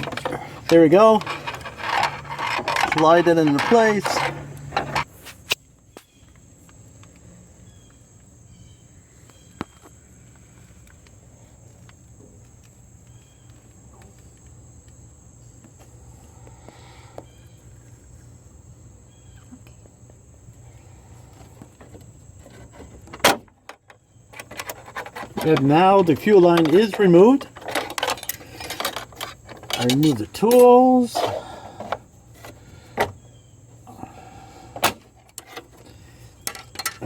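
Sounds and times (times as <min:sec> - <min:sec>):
hand tools clicking and scraping: 0:00.0 - 0:05.6, 0:21.4 - 0:33.2, 0:34.0 - 0:37.0.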